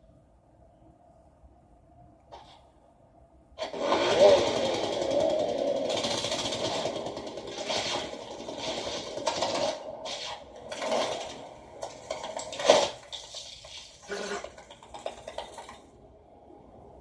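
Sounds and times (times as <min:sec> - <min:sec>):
scraping and rustling: 0:07.5 - 0:15.8.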